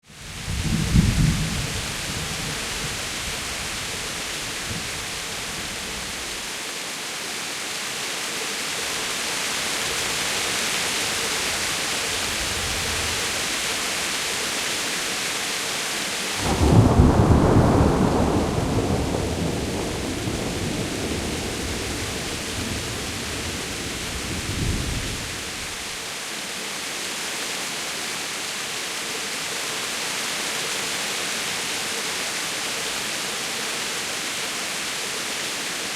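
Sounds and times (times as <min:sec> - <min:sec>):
heavy rain pouring: 0:00.0 - 0:35.9
thunder clap and rumble: 0:00.4 - 0:03.8, 0:16.4 - 0:25.6.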